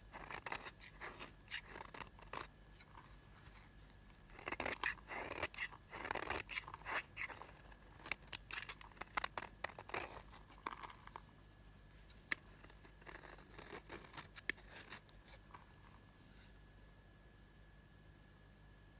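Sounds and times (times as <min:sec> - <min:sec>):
blade cutting soap: 0:00.2 - 0:02.9, 0:04.2 - 0:10.9, 0:12.3 - 0:15.4.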